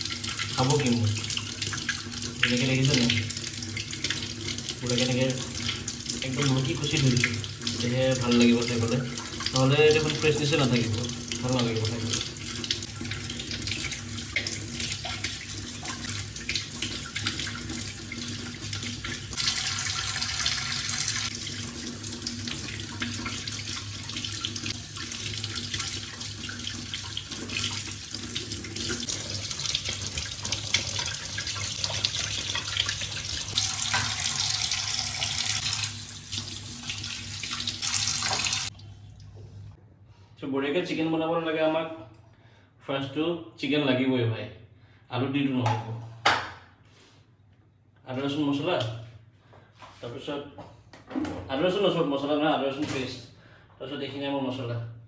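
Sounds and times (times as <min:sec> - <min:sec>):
tap running into a sink: 0:11.6 - 0:38.7, 0:45.6 - 0:46.6.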